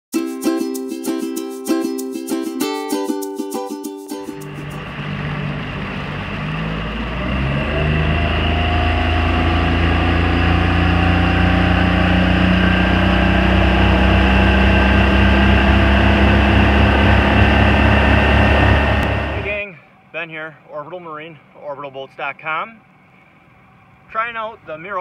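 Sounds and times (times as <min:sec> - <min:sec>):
outboard motor running: 0:04.4 - 0:19.6.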